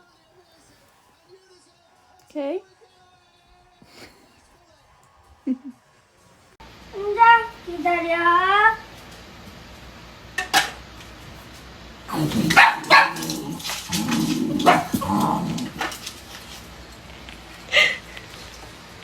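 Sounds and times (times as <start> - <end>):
dog barking: 12.1 - 15.9
dog low calls: 12.1 - 16.2.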